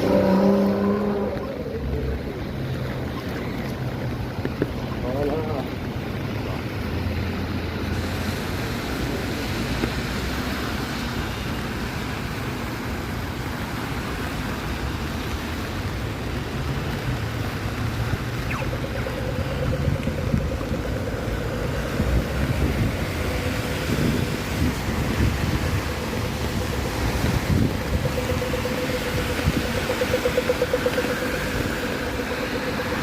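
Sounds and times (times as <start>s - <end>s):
passing road traffic: 0.0s - 33.0s
wind buffeting microphone: 18.1s - 33.0s.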